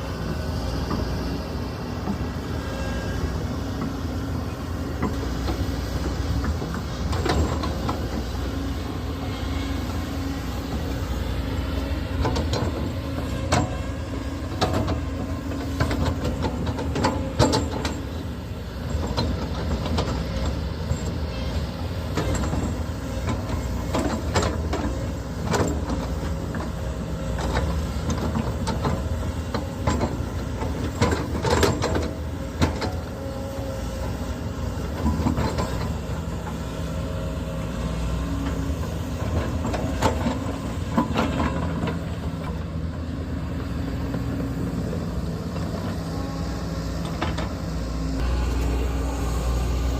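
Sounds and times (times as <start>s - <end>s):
diesel engine running: 0.0s - 49.9s
metallic clanks and knocks: 14.5s - 18.2s, 27.4s - 33.1s.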